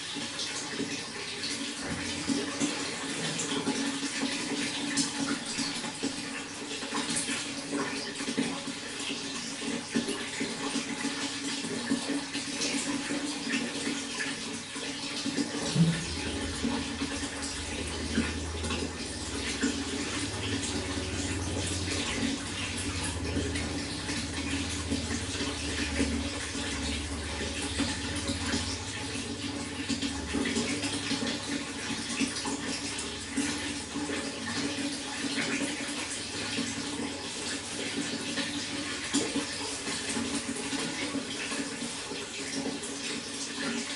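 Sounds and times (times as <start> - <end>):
water running: 0.0 - 43.9
low rumble: 15.7 - 29.3.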